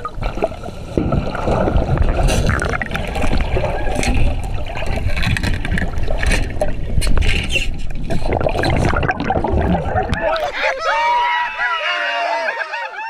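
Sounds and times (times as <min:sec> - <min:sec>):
wind noise on microphone: 0:01.0 - 0:10.4
voices: 0:09.8 - 0:13.0.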